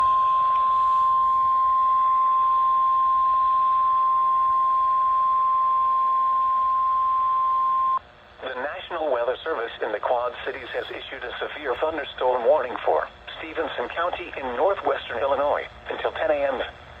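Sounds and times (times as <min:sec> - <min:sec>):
steady alarm tone: 0:00.0 - 0:08.0
radio hiss: 0:00.5 - 0:17.0.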